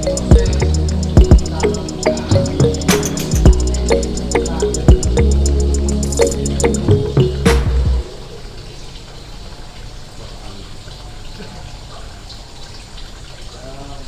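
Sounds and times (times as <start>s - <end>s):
running water rushing: 0.0s - 14.0s
music intro final hit: 0.3s - 8.3s.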